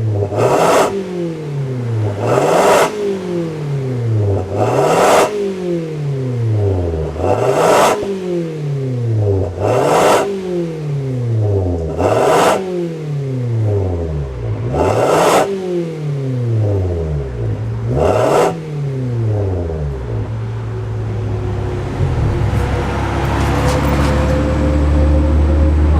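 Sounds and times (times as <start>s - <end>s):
car engine revving: 0.0s - 25.9s
car engine idling: 16.2s - 25.9s.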